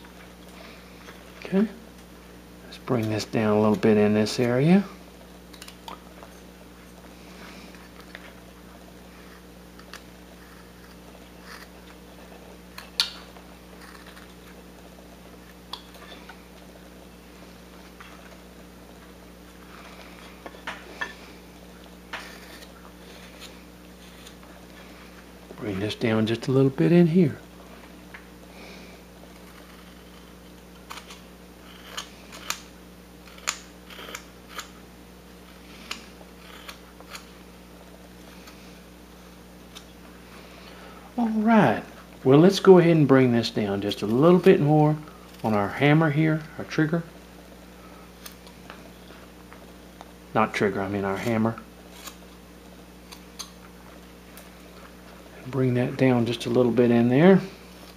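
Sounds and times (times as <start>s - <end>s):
steady low hum: 0.0s - 57.9s
carving blade cutting wood: 29.4s - 34.8s, 35.5s - 37.3s.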